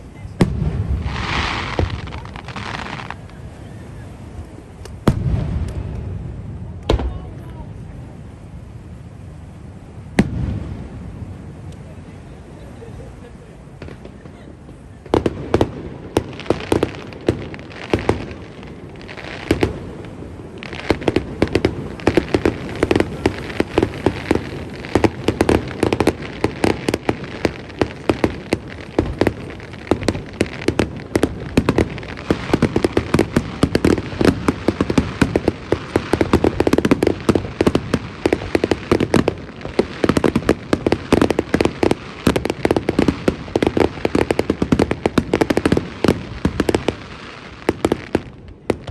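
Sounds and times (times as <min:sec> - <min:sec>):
fireworks crackling: 0:00.0 - 0:48.9
fireworks shells bursting: 0:15.2 - 0:47.0.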